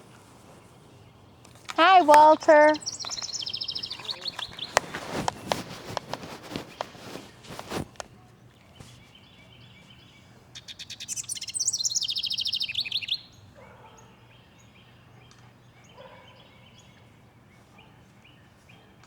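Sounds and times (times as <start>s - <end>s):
faint bird calls and chirps: 1.8s - 5.0s, 8.5s - 17.0s
songbird trill: 1.8s - 5.0s, 8.5s - 18.6s.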